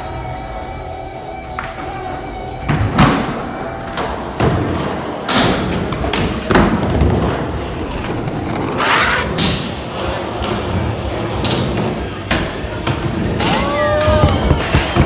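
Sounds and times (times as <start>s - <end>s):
skateboard wheels rolling: 0.2s - 15.0s
skateboard hitting a ramp: 2.6s - 8.1s, 8.8s - 15.0s.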